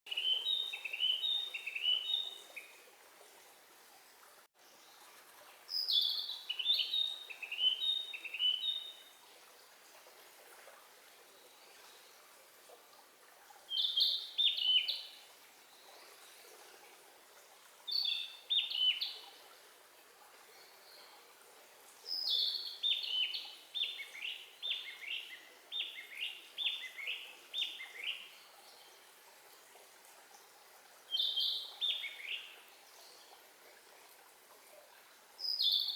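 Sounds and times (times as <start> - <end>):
songbird singing: 0.1 - 2.7, 5.8 - 9.1, 13.7 - 15.2, 17.9 - 19.3, 22.1 - 29.0, 31.1 - 32.7, 35.4 - 35.9.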